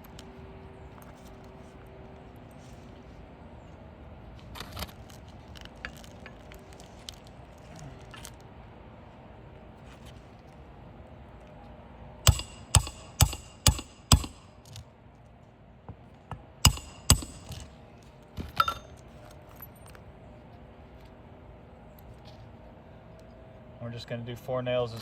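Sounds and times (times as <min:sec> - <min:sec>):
hammer striking nails: 0:12.3 - 0:14.8, 0:16.6 - 0:17.7.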